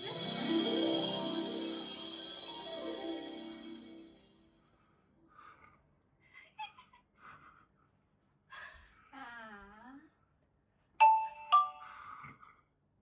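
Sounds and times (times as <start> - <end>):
two-note doorbell chime: 0.0 - 4.5, 11.0 - 12.0.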